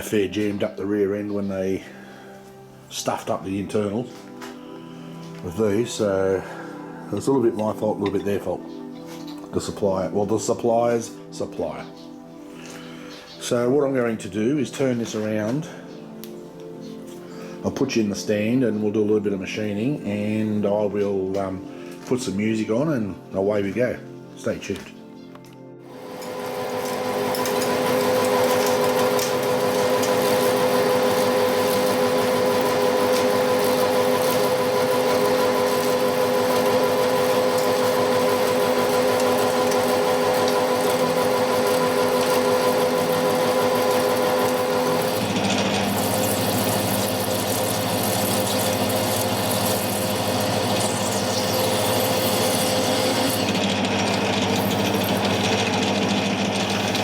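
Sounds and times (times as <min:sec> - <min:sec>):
metal lathe running: 0:25.9 - 0:57.0.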